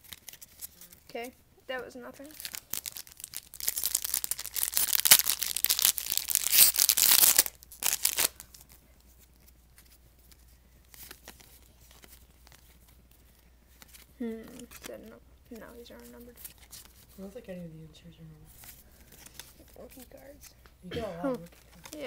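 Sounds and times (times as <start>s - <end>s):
foil wrapper tearing and crinkling: 0.0s - 0.9s, 2.3s - 8.8s.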